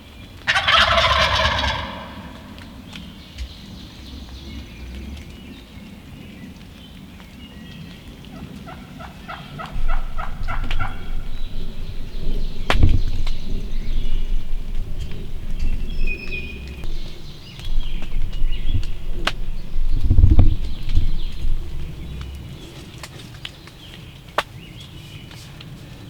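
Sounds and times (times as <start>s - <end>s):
turkey yelping: 0.4s - 3.5s, 8.4s - 11.8s.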